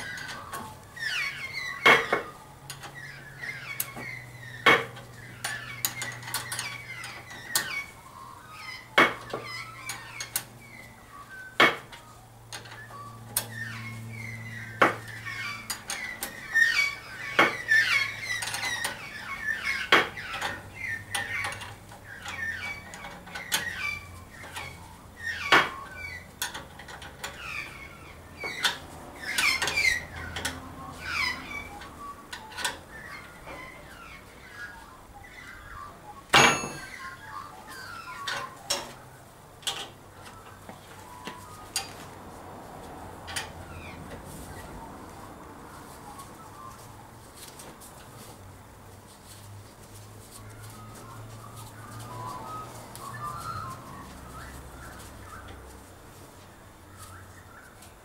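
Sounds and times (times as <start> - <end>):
metal parts and tools clinking: 36.3 - 37.0.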